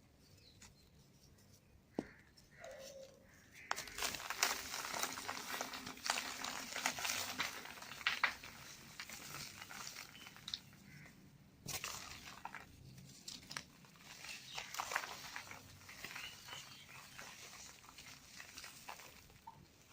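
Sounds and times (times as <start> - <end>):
cement crumbling and crunching: 3.6 - 19.9.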